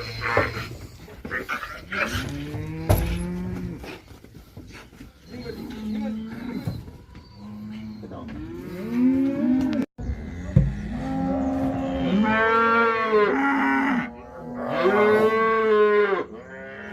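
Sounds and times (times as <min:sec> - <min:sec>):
cattle mooing: 0:07.4 - 0:16.9.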